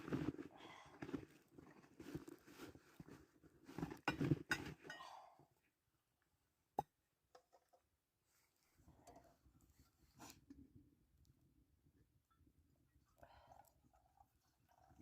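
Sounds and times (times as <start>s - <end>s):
crunching and handling noises: 0.0s - 4.9s.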